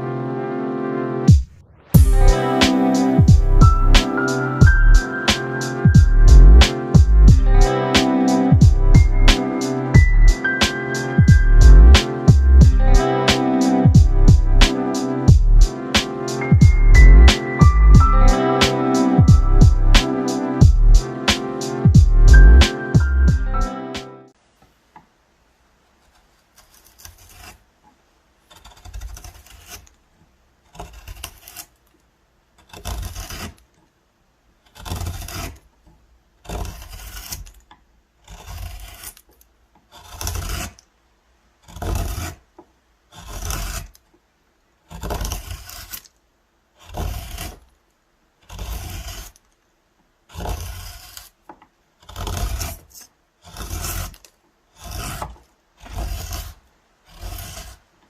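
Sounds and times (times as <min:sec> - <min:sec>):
hand tool scraping wood: 0:26.0 - 0:27.6, 0:28.5 - 0:30.0, 0:30.7 - 0:31.8, 0:32.6 - 0:33.6, 0:34.7 - 0:35.6, 0:36.4 - 0:37.6, 0:38.2 - 0:40.8, 0:41.6 - 0:42.4, 0:43.1 - 0:44.0, 0:44.9 - 0:46.1, 0:46.8 - 0:47.7, 0:48.4 - 0:49.5, 0:50.3 - 0:51.4, 0:52.0 - 0:57.9.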